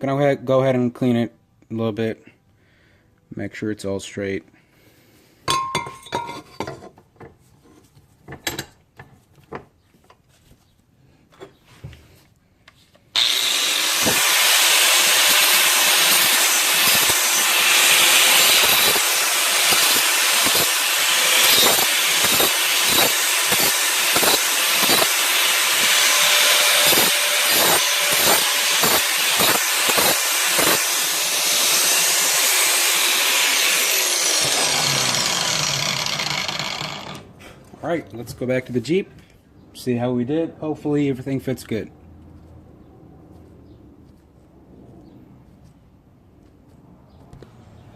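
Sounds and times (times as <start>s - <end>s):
power tool grinding steel pipe: 13.2s - 37.4s.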